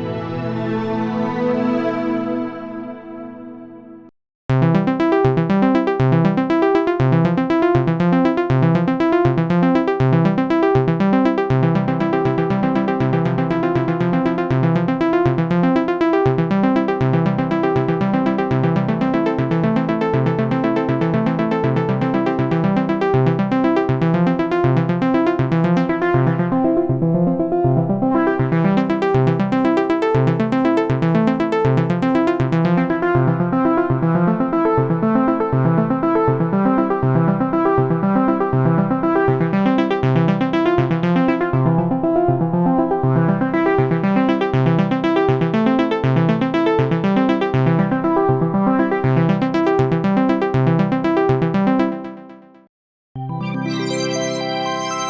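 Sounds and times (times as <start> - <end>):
synthesizer pulsing chord notes: 0.0 - 27.0, 53.2 - 55.0.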